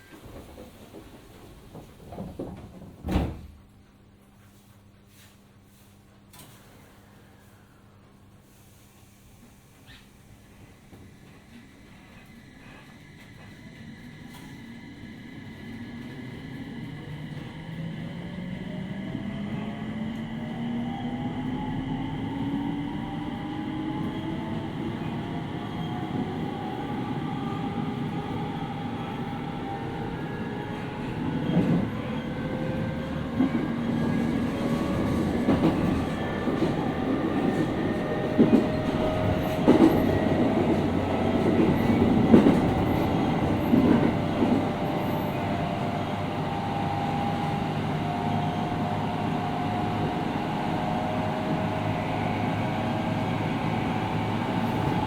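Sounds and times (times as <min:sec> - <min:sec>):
wheel and rail rumble: 0:11.3 - 0:55.0.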